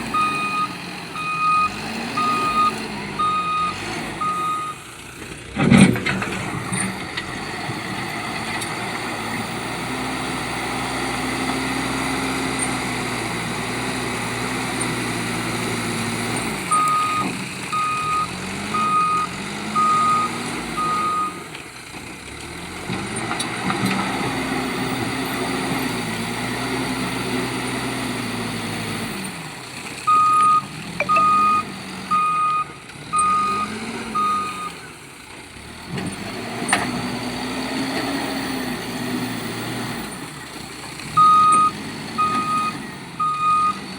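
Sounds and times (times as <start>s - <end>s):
diesel engine revving: 0.0s - 43.9s
reversing alarm beeping: 0.1s - 4.8s, 16.6s - 21.4s, 30.1s - 34.9s, 41.2s - 43.8s.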